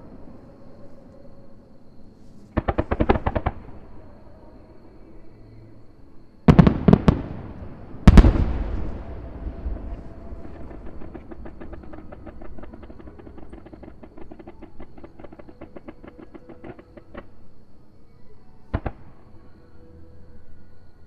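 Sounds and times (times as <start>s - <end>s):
heavy firework boom: 6.5s - 13.6s
firework bangs: 6.5s - 17.3s.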